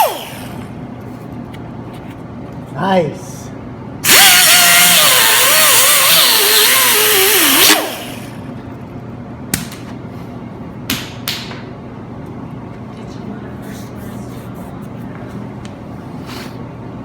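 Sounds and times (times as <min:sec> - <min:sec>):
angle grinder cutting steel: 0:04.0 - 0:08.4.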